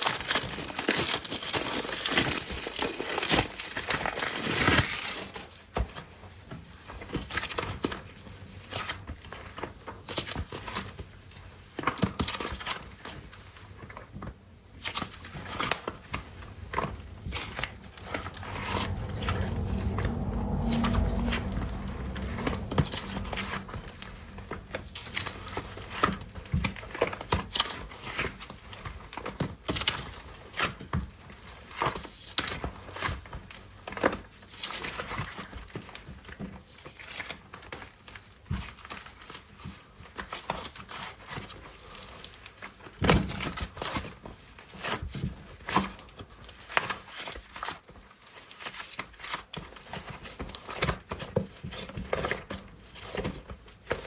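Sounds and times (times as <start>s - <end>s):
packaging crinkling: 0.0s - 5.1s.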